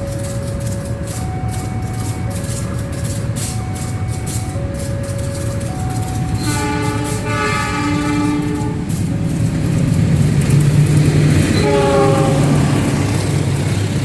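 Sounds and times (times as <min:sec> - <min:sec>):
locomotive air horn blasts: 0:00.0 - 0:09.1, 0:11.5 - 0:13.1
train running rumble: 0:00.0 - 0:14.0.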